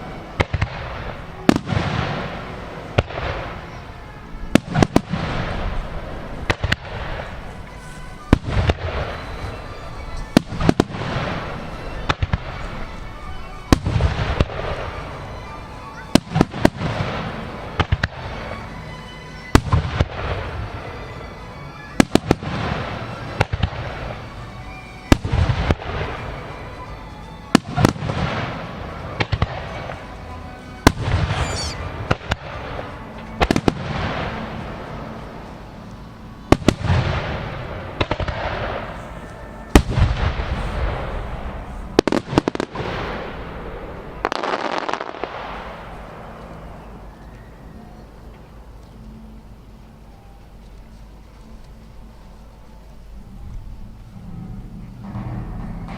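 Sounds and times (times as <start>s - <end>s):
fireworks bursting and crackling: 0.0s - 20.6s, 21.9s - 35.2s, 36.5s - 46.6s.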